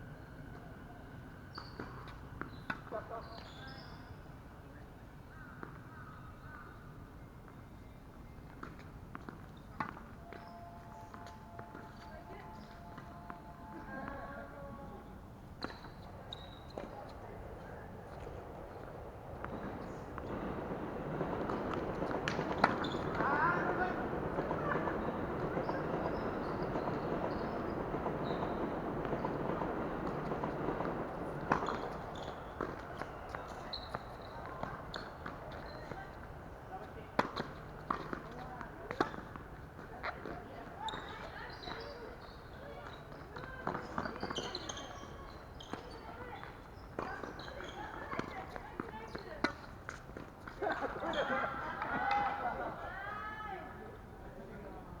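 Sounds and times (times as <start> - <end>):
low steady background noise: 0.0 - 55.0
steady background noise: 0.0 - 55.0
tennis balls being hit: 21.4 - 25.0.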